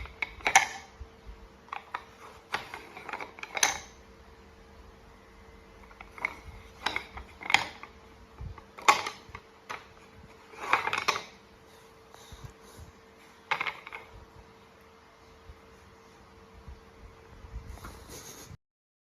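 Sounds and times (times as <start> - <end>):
hard objects clicking and clattering: 0.0 - 0.9, 1.6 - 4.0, 5.8 - 11.4, 13.4 - 14.2
faint steady hum: 0.0 - 18.6.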